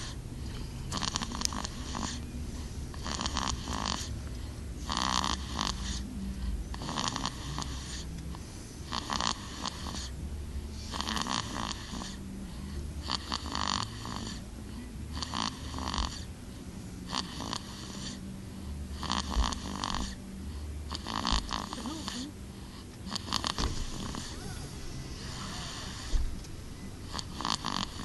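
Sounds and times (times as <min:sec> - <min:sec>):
boy snoring: 0:00.9 - 0:02.2, 0:02.9 - 0:04.1, 0:04.8 - 0:06.0, 0:06.7 - 0:08.1, 0:08.8 - 0:10.2, 0:10.8 - 0:14.4, 0:15.1 - 0:16.3, 0:17.1 - 0:18.2, 0:18.9 - 0:20.2, 0:20.9 - 0:22.4, 0:23.1 - 0:26.3, 0:27.0 - 0:28.0.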